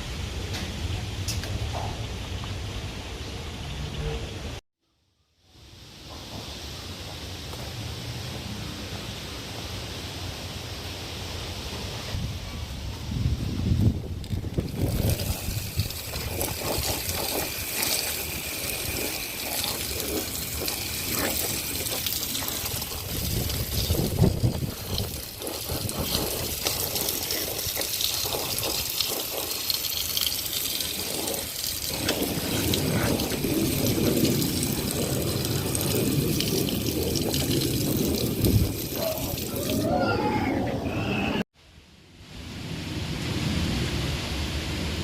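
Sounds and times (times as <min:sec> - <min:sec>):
running water splashing: 0:14.2 - 0:40.0.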